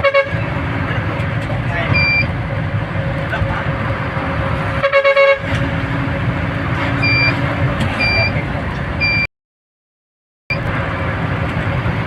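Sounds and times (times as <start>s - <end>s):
car horn honk: 0.0s - 0.4s, 4.8s - 5.5s
vehicle engine and road noise: 0.0s - 9.3s, 10.5s - 12.0s
short high beeps: 2.0s - 2.3s, 7.0s - 7.3s.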